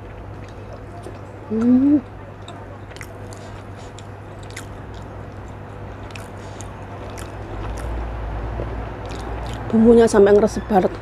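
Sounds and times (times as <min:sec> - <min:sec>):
chewing food: 0:00.0 - 0:09.8
steady low hum: 0:00.0 - 0:11.0
wet mouth smacks and clicks: 0:09.0 - 0:09.7.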